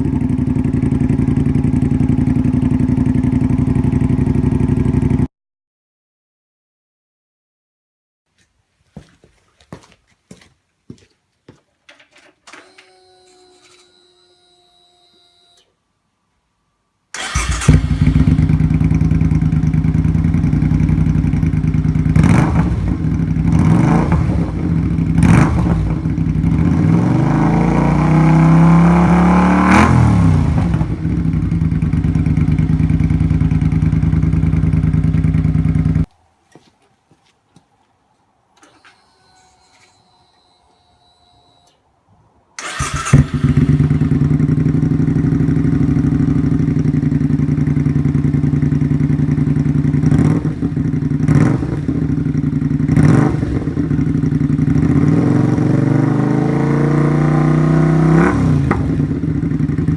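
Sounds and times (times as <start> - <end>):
motorcycle engine idling and revving: 0.0 - 5.3, 17.2 - 36.1, 42.6 - 59.9
faint hum: 12.5 - 17.0, 38.1 - 42.6.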